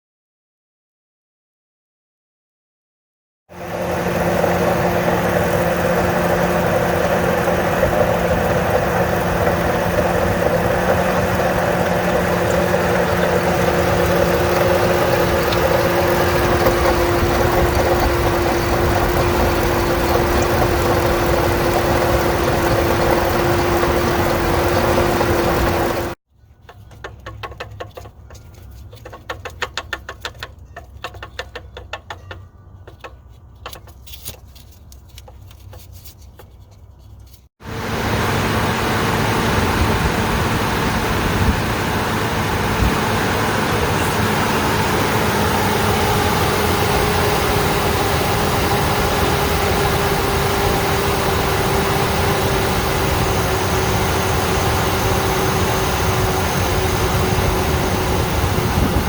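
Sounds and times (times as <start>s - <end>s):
engine idling with ticking: 3.6s - 26.2s, 37.7s - 59.0s
loud whirring with sinking whine: 3.6s - 26.2s, 37.6s - 59.0s.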